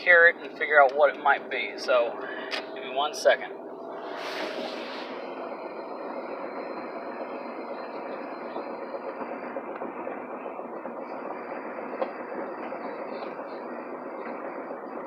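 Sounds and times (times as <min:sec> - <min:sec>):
car road and engine noise: 0:00.0 - 0:15.0
short rush of hiss: 0:04.0 - 0:05.2.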